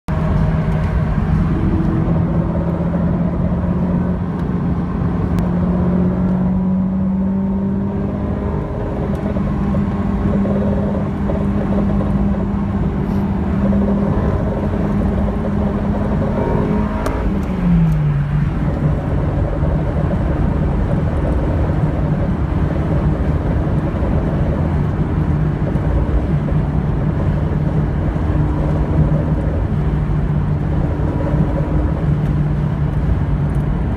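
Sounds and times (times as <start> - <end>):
road noise: 0.1 - 33.9
wheel drone: 0.1 - 33.9.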